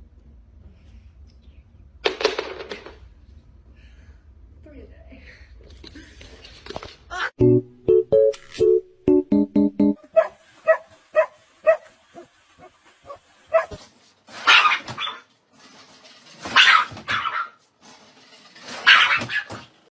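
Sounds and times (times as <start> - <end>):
dog barking loudly: 10.1 - 12.3, 13.1 - 13.8, 14.4 - 15.2, 16.5 - 17.6, 18.8 - 19.6
dog yipping: 10.1 - 12.3, 13.0 - 13.8, 14.4 - 15.3, 16.5 - 17.6, 18.8 - 19.6.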